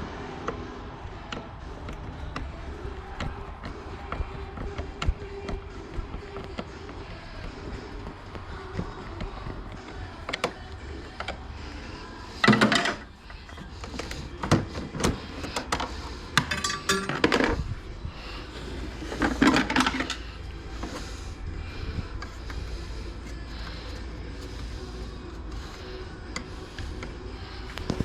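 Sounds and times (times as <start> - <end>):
plastic panels clicking and knocking: 12.4 - 17.6
rattling clatters: 14.0 - 17.6.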